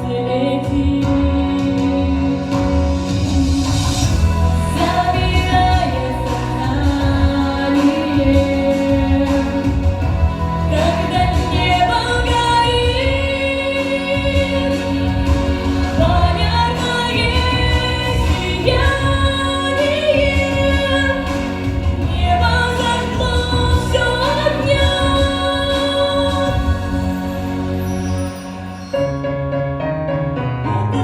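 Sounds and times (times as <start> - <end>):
woman singing: 0.0 - 28.0, 30.6 - 31.0
instrumental accompaniment: 0.0 - 31.0.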